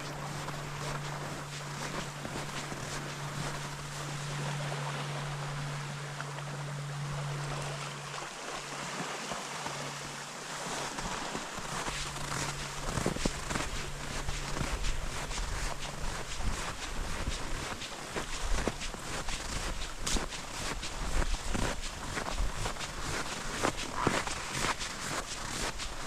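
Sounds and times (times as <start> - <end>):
footsteps on ice: 0.0 - 3.8, 11.1 - 26.0
low hum: 0.0 - 26.0.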